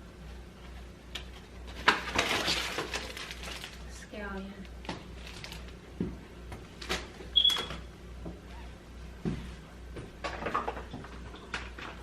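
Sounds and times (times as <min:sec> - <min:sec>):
packaging rustling: 0:01.7 - 0:04.1, 0:05.0 - 0:05.8.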